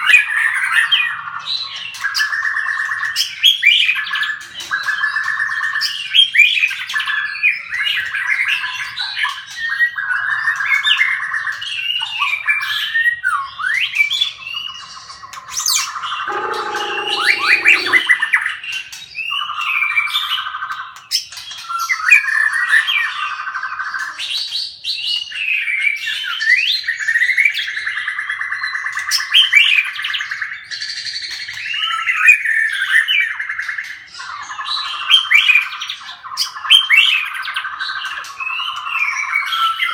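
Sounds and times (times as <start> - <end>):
birds chirping and squawking: 16.3 - 18.1
brief low-pitched sound: 16.3 - 18.1.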